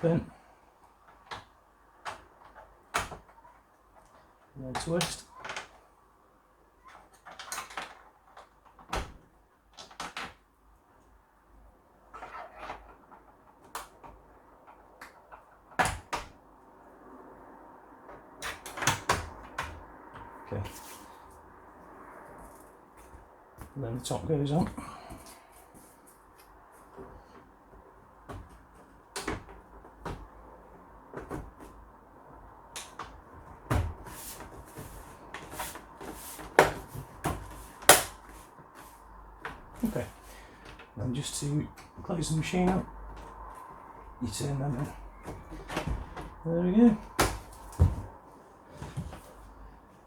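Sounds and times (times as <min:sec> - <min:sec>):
computer case parts knocking: 0:26.9 - 0:38.3, 0:41.6 - 0:49.4
computer case lid clicks and knocks: 0:32.8 - 0:34.1, 0:47.1 - 0:48.2.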